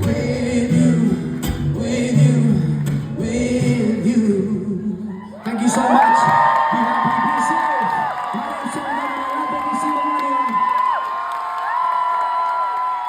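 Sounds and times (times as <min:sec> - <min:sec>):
acoustic guitar strumming: 0:00.0 - 0:05.1
people singing: 0:00.0 - 0:06.3.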